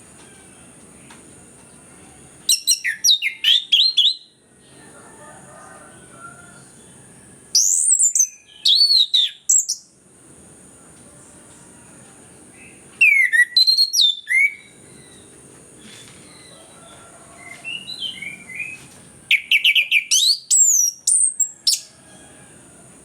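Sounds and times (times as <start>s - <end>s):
thrush singing whistled notes: 2.5s - 4.4s, 7.5s - 9.9s, 12.6s - 15.2s, 17.4s - 21.9s.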